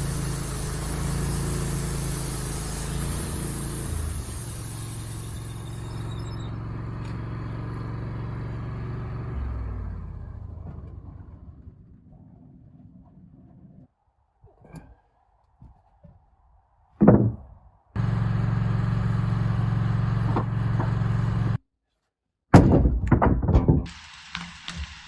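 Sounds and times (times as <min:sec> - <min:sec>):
sawmill running: 0:00.0 - 0:11.5, 0:18.0 - 0:21.6, 0:23.9 - 0:25.0
heavy wooden thunk: 0:17.0 - 0:17.6, 0:22.5 - 0:23.9
lumber knocking and thudding: 0:17.0 - 0:17.6, 0:22.5 - 0:24.0.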